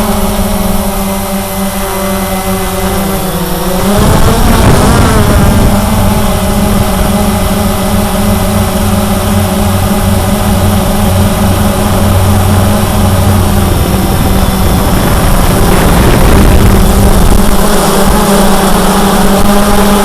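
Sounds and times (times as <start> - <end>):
drone motors humming and whining: 0.0 - 20.0.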